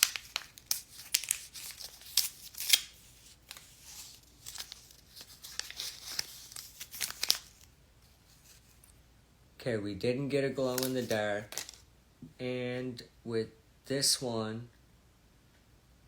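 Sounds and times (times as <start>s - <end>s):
plastic wrapping crinkling and tearing: 0.0s - 9.0s, 10.6s - 11.8s.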